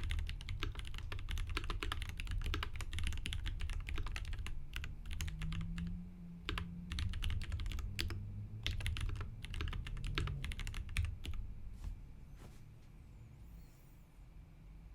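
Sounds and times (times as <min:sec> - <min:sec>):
mechanical keyboard typing: 0:00.0 - 0:11.4
low steady hum: 0:00.0 - 0:14.9.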